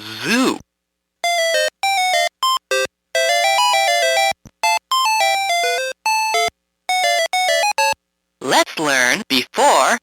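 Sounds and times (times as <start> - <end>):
toy electronic jingle beeps: 1.2 - 8.0.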